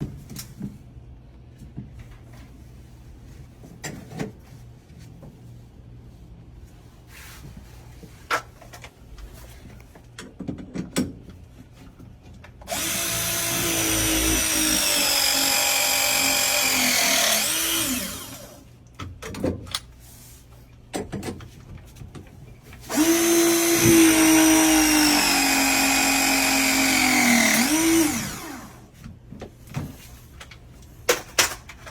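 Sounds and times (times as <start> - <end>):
electric power drill running: 12.7 - 18.6, 22.9 - 28.9.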